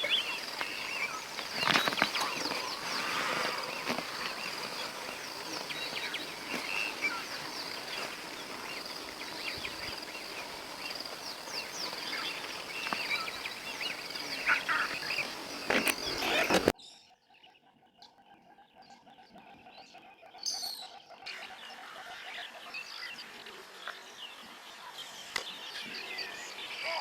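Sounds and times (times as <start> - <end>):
high-pitched insect drone: 0.0 - 16.7
bird chirps and calls: 0.0 - 22.9.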